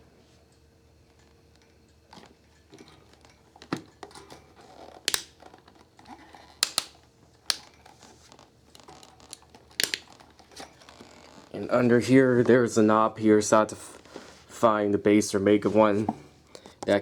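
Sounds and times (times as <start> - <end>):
plastic fan clicks and knocks: 2.2 - 10.8.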